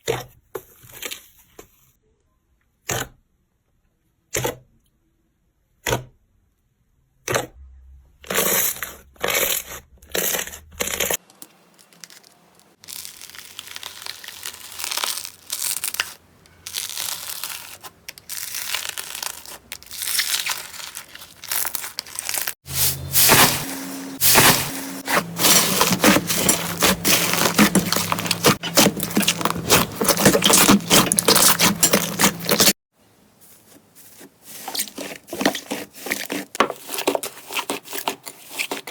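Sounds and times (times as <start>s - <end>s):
slime crackling and squelching: 8.2s - 32.8s, 34.0s - 38.9s.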